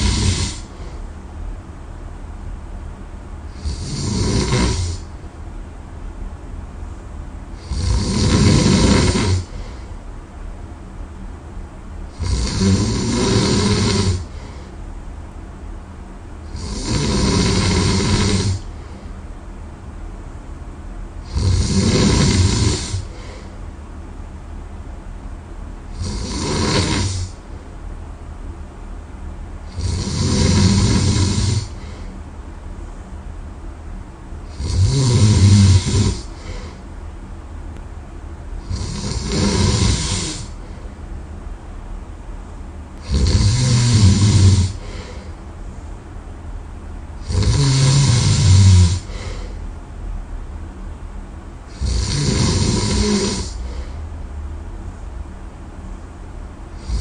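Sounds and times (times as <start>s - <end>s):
person snoring loudly: 0.0s - 0.9s, 3.5s - 5.1s, 7.6s - 9.7s, 12.1s - 14.5s, 16.5s - 18.8s, 21.2s - 23.5s, 25.9s - 27.4s, 29.7s - 32.1s, 34.5s - 36.8s, 38.6s - 40.7s, 43.0s - 45.3s, 47.2s - 49.6s, 51.7s - 54.0s, 56.8s - 57.0s
quiet breathing: 0.0s - 1.2s, 9.0s - 10.1s, 13.6s - 14.9s, 18.1s - 19.3s, 22.3s - 23.8s, 29.6s - 33.2s, 34.5s - 37.0s, 38.6s - 41.2s, 42.9s - 46.0s, 47.4s - 49.8s, 52.9s - 57.0s.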